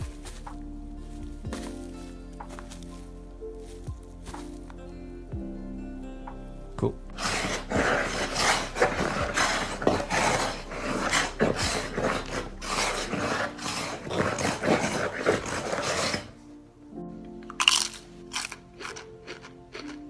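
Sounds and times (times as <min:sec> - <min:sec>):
soft music tones: 0:00.0 - 0:20.0
rasping scraping strokes: 0:07.1 - 0:16.4.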